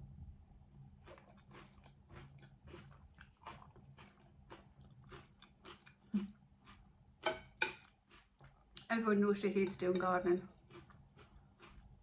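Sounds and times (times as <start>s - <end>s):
chewing crunchy food: 1.0s - 8.9s, 10.5s - 12.0s.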